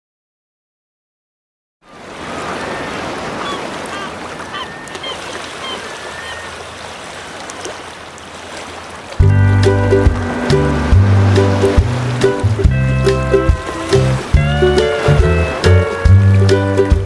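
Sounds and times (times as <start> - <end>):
water noise: 1.8 - 17.0
birds chirping: 2.0 - 9.1.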